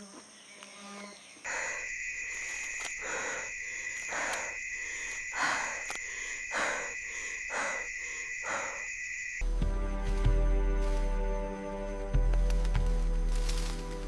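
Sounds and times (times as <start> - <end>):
high insect drone: 0.0 - 14.0
music: 9.4 - 14.0.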